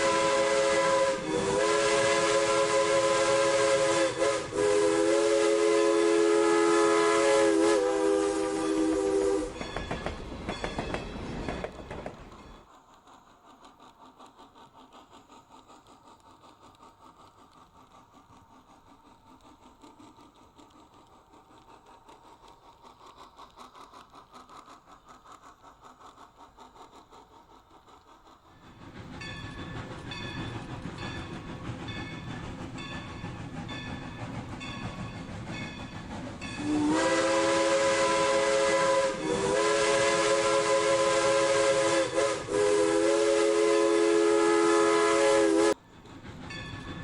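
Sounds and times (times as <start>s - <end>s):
steam whistle: 0.0s - 9.6s, 36.6s - 45.8s
steam locomotive running beat: 0.0s - 47.0s.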